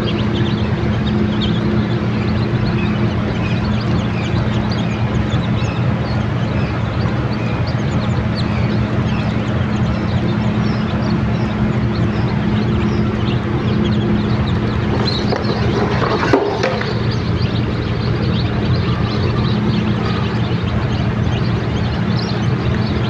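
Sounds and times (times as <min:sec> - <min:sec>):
chicks peeping: 0:00.0 - 0:23.0
low mechanical hum: 0:00.0 - 0:23.0.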